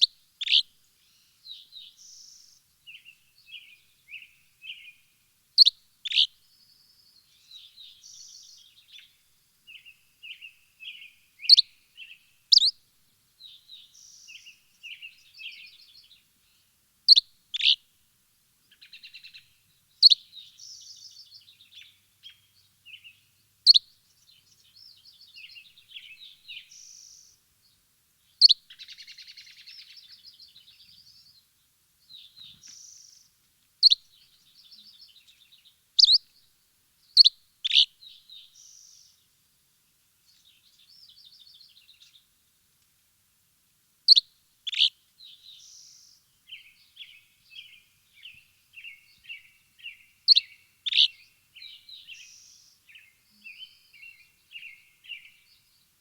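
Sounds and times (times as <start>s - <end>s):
bird twittering and trills: 5.6s - 12.8s, 13.4s - 17.8s, 18.7s - 27.4s, 32.1s - 36.4s, 44.1s - 56.0s.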